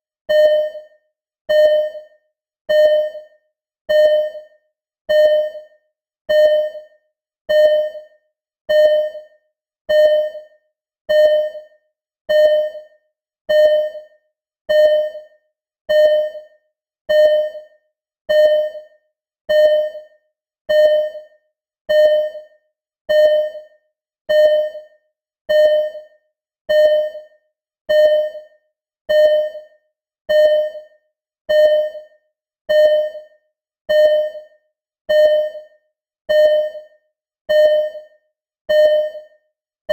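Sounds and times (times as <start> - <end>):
heart monitor beeping: 0.3 - 0.9, 1.5 - 2.1, 2.7 - 3.3, 3.9 - 4.5, 5.1 - 5.7, 6.3 - 6.9, 7.5 - 8.1, 8.7 - 9.3, 9.9 - 10.5, 11.1 - 11.7, 12.3 - 12.9, 13.5 - 14.1, 14.7 - 15.3, 15.9 - 16.5, 17.1 - 17.7, 18.3 - 18.9, 19.5 - 20.1, 20.7 - 21.3, 21.9 - 22.5, 23.1 - 23.7, 24.3 - 24.9, 25.5 - 26.1, 26.7 - 27.3, 27.9 - 28.5, 29.1 - 29.7, 30.3 - 30.9, 31.5 - 32.1, 32.7 - 33.3, 33.9 - 34.5, 35.1 - 35.7, 36.3 - 36.9, 37.5 - 38.1, 38.7 - 39.9.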